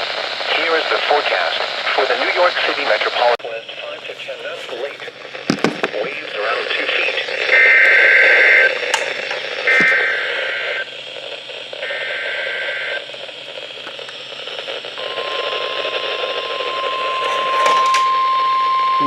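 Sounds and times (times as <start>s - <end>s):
radio static: 0.0s - 18.1s
steady alarm tone: 7.4s - 19.0s.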